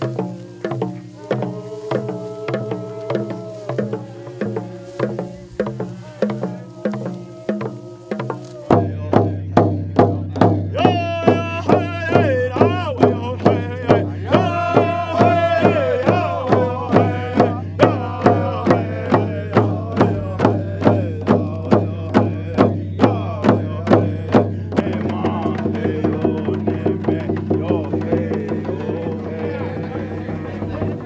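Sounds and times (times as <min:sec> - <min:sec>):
drum beating: 0:00.0 - 0:31.0
voices singing a chant: 0:00.0 - 0:31.0.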